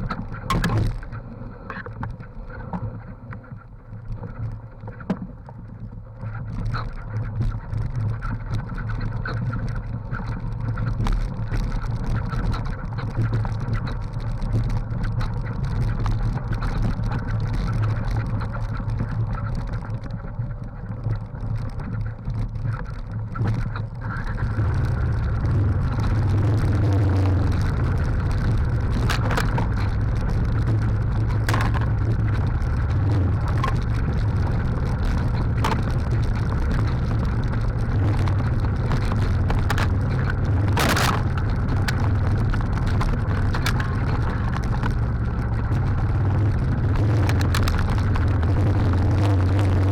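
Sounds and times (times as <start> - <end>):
motorcycle engine running: 20.8 - 49.9.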